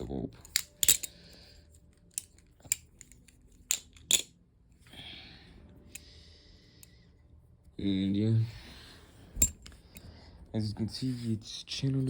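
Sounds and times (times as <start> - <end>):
butterfly knife handles clicking: 0.4 - 1.2, 2.0 - 4.3.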